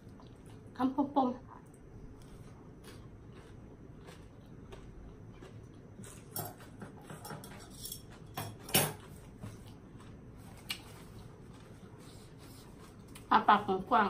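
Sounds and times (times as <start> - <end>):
utensils tapping on dishes: 6.4 - 9.0.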